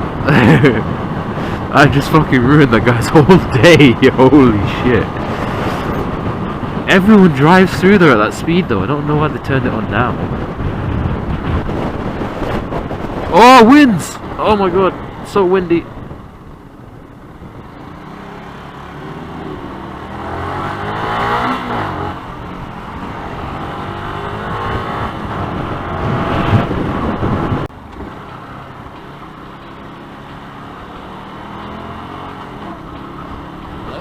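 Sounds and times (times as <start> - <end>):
wind noise on microphone: 0.0 - 29.5
motorcycle engine accelerating: 14.6 - 34.0.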